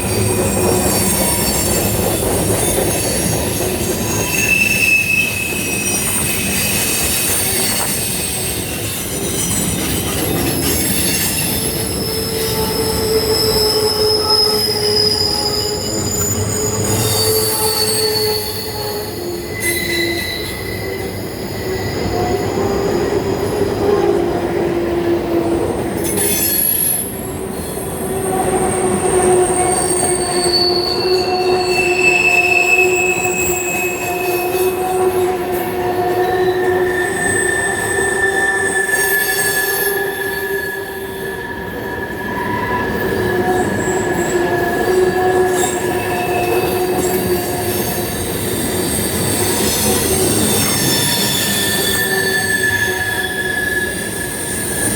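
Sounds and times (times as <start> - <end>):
rumble of train cars: 0.0 - 54.9
train wheels squealing: 0.0 - 54.9.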